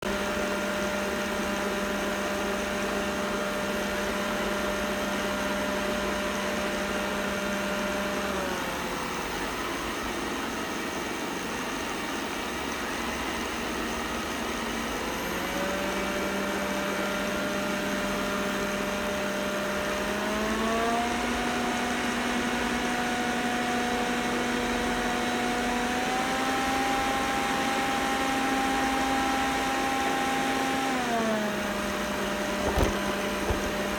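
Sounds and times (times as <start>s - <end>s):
robot vacuum buzzing hum: 32.5s - 33.9s.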